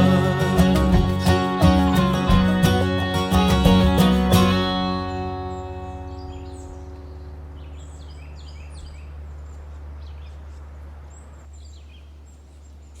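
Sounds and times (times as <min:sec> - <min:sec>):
acoustic guitar notes: 0:00.0 - 0:07.7
steady low rumble: 0:00.0 - 0:11.0
birds chirping: 0:00.0 - 0:13.0.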